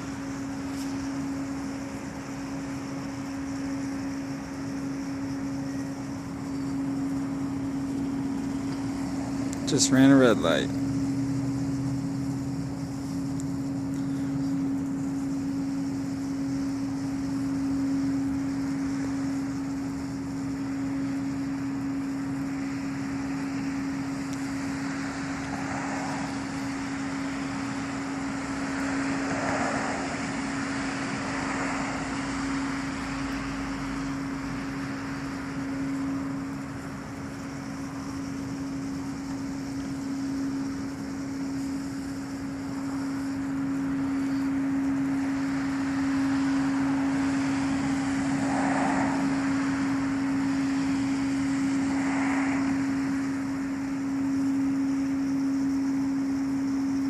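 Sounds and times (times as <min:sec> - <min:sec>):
steady low hum: 0:00.0 - 0:57.0
vehicle passing by: 0:24.8 - 0:35.6, 0:45.3 - 0:53.6.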